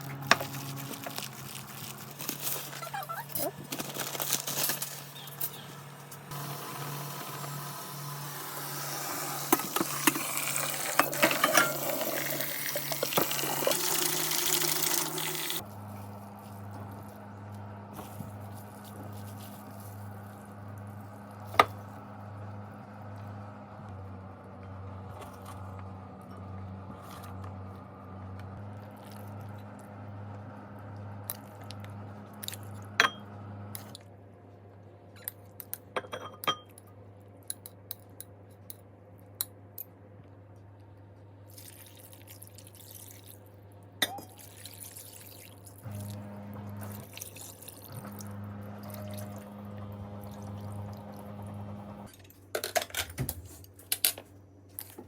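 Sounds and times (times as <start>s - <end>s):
dishes clinking and knocking: 36.0s - 36.7s
liquid sounds: 41.5s - 46.2s, 46.8s - 49.5s.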